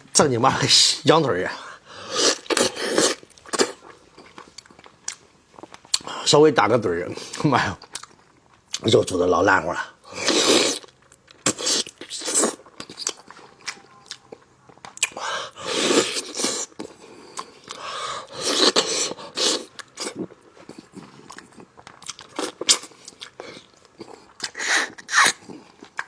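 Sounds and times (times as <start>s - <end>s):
wet chewing of meat: 2.0s - 6.2s, 10.0s - 26.0s
mouth smacks and clicks: 21.0s - 26.0s.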